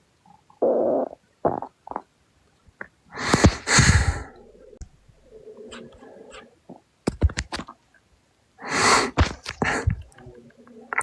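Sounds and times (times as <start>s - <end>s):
stomach growling and gurgling: 0.2s - 2.2s, 2.8s - 7.7s, 9.2s - 11.0s.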